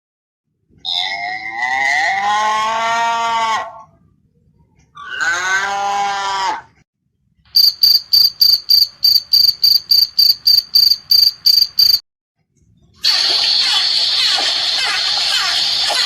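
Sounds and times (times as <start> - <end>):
cow mooing: 5.1 - 6.7
cricket chirping: 7.6 - 12.0.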